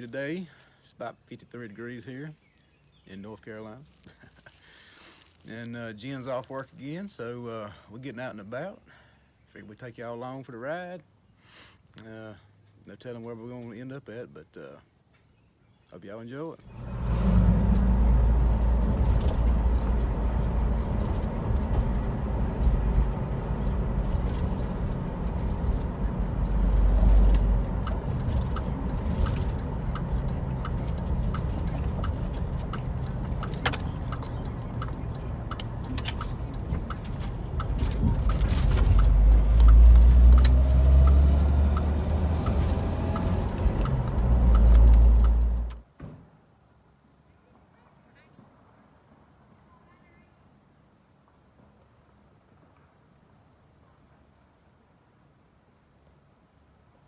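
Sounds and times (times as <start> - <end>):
car engine and road noise: 16.6 - 45.9
light regular ticking: 16.7 - 45.8.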